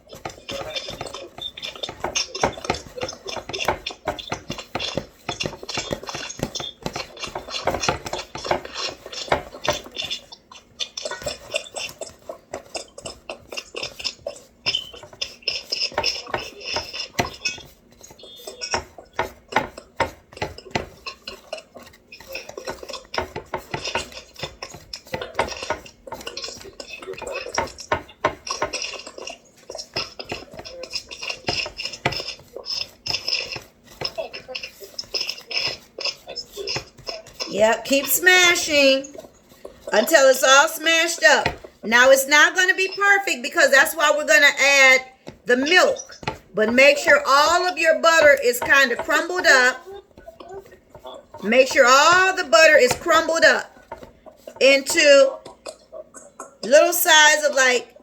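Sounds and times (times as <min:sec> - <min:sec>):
fork clinking and scraping in bowl: 0:00.0 - 0:43.3.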